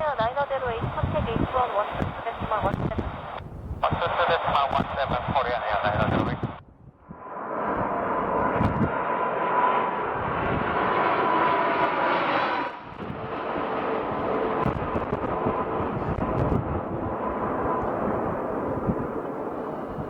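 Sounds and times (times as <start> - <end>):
jet engines rumbling with whine: 0.0 - 20.0.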